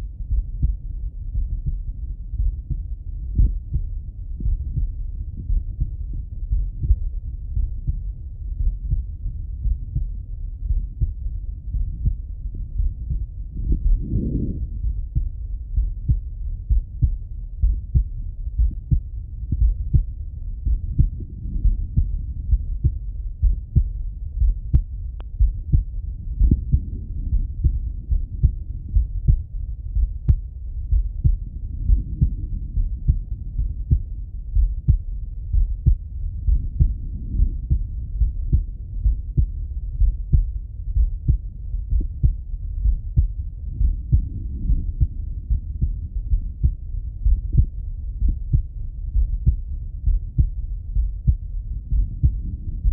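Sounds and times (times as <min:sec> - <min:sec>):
heartbeat through stethoscope: 0:00.0 - 0:52.9.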